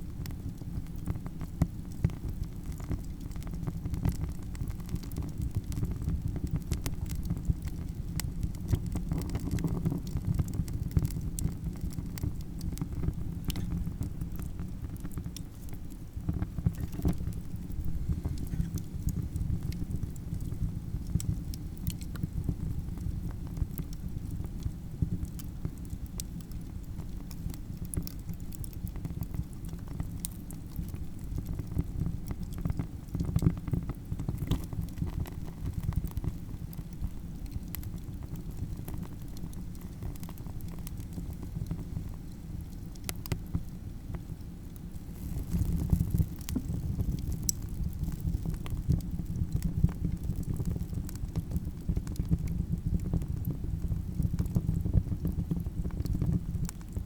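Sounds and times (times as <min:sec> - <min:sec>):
campfire crackling and popping: 0:00.0 - 0:57.0.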